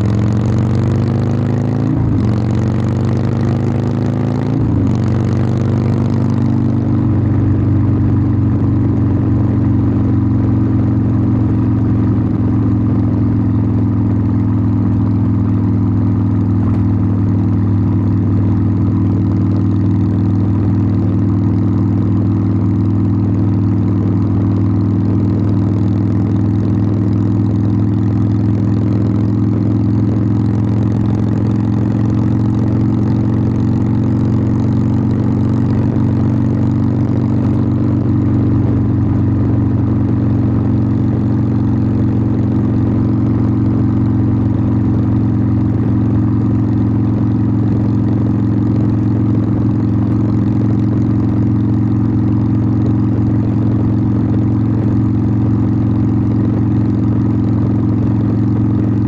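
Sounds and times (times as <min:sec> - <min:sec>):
motorcycle exhaust running steadily: 0:00.0 - 0:59.0.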